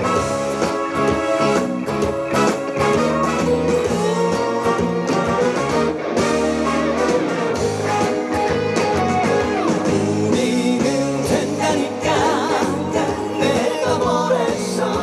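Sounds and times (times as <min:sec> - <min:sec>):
trot music with guitar: 0:00.0 - 0:15.0
person singing: 0:09.9 - 0:15.0.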